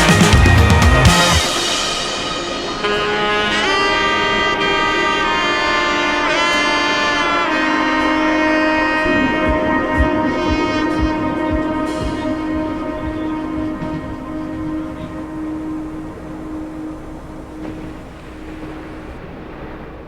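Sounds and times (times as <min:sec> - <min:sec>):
background music with bending lead: 0:00.0 - 0:18.2
soft low beats: 0:08.8 - 0:19.4.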